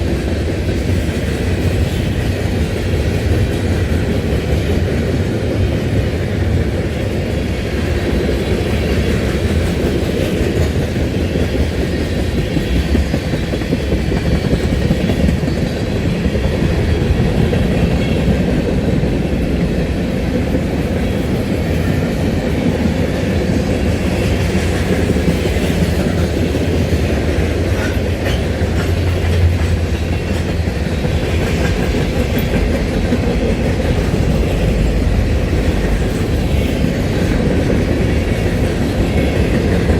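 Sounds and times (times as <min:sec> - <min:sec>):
train wheels rolling on rails: 0:00.0 - 0:39.9.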